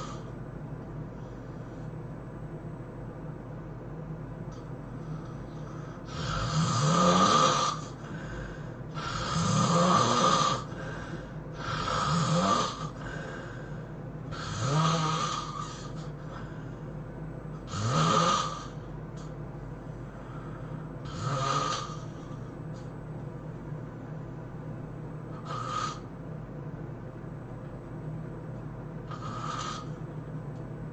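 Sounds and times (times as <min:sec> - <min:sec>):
person snoring loudly: 0:00.0 - 0:00.3, 0:05.8 - 0:13.6, 0:14.3 - 0:16.5, 0:17.6 - 0:18.8, 0:21.0 - 0:22.3, 0:25.3 - 0:26.1, 0:29.1 - 0:30.0.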